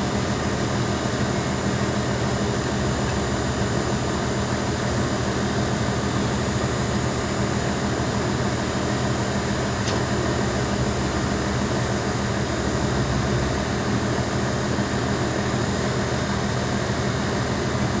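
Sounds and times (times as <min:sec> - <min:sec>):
diesel excavator engine running: 0:00.0 - 0:18.0.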